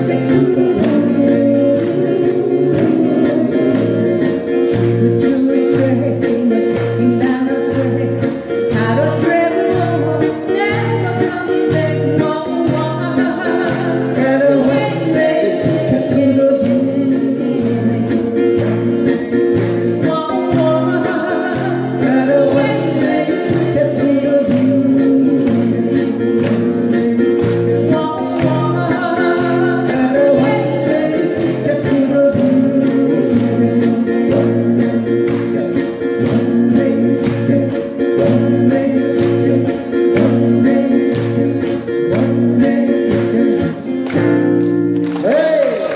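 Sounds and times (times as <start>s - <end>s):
voices singing together: 0.0s - 44.2s
strummed acoustic guitars: 0.0s - 45.9s
pulsing bass line: 13.8s - 45.0s.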